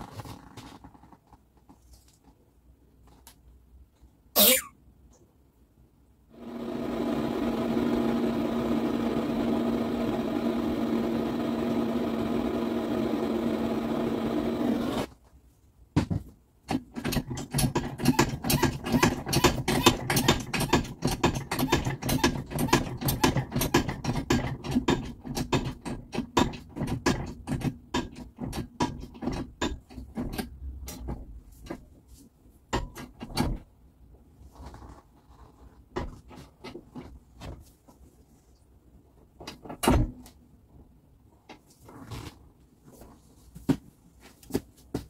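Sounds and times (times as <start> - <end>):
washing machine motor hum: 6.3 - 15.1
clatter of sharp knocks and clicks: 16.0 - 31.8.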